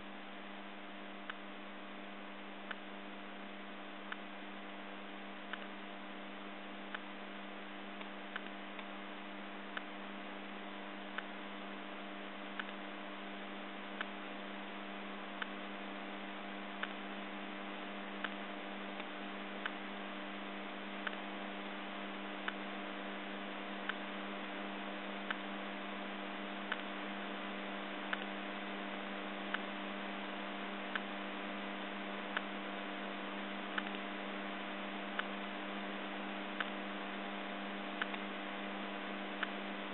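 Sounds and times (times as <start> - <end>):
light clicks: 5.5 - 5.8, 8.0 - 9.0, 12.6 - 12.8, 16.8 - 17.0, 18.2 - 19.8, 21.0 - 21.3, 26.7 - 27.0, 28.1 - 28.4, 33.7 - 34.1, 36.5 - 36.8, 38.0 - 38.3.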